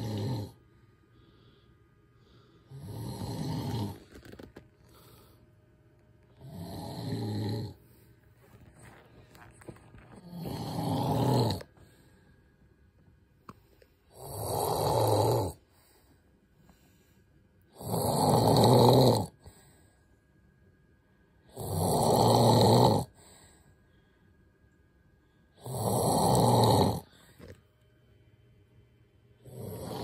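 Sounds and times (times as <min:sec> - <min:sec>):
man snoring: 0:00.0 - 0:00.6, 0:02.6 - 0:04.4, 0:06.3 - 0:07.8, 0:10.2 - 0:11.7, 0:14.1 - 0:15.6, 0:17.7 - 0:19.4, 0:21.5 - 0:23.2, 0:25.6 - 0:27.2, 0:29.4 - 0:30.0
quiet breathing: 0:00.0 - 0:17.8, 0:19.3 - 0:21.6, 0:23.0 - 0:25.8, 0:26.9 - 0:30.0.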